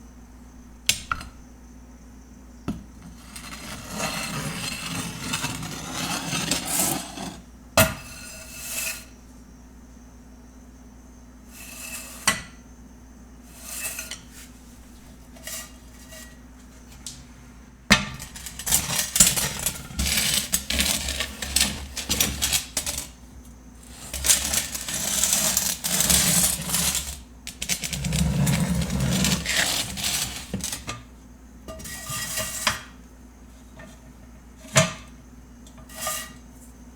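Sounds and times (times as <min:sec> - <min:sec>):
metal pots and pans clanking: 0:31.7 - 0:33.0.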